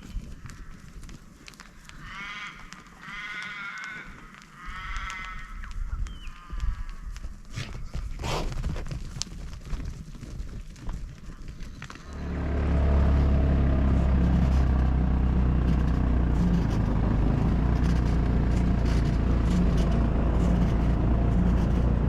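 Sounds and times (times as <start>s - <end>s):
vehicle engine droning: 11.8s - 22.0s.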